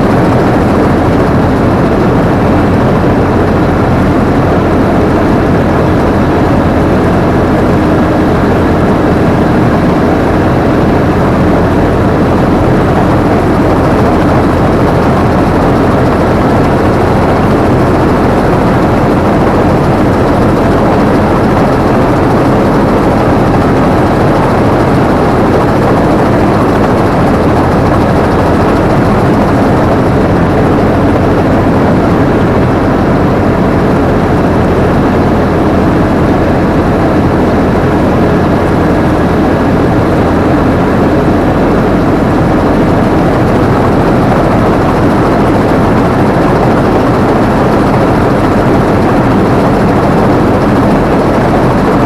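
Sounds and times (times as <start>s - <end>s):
combine harvester running: 0.0s - 52.0s.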